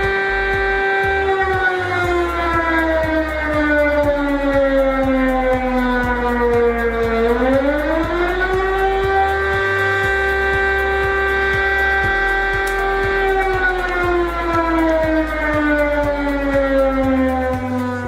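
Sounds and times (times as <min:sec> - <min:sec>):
electronic siren alarm tone: 0:00.0 - 0:18.0.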